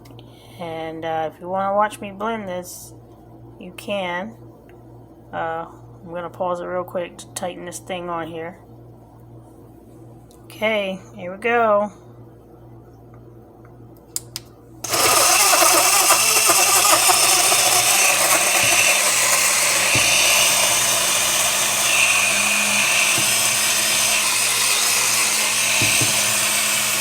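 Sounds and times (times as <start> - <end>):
blender motor running: 14.8 - 27.0.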